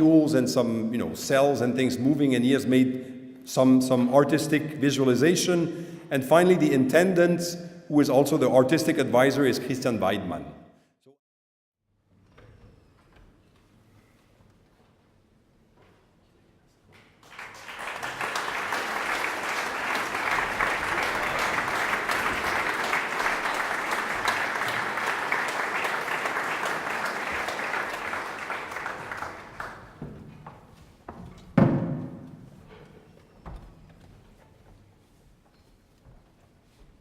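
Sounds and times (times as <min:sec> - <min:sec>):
audience applauding: 0:17.2 - 0:30.0
knocks: 0:30.0 - 0:32.9.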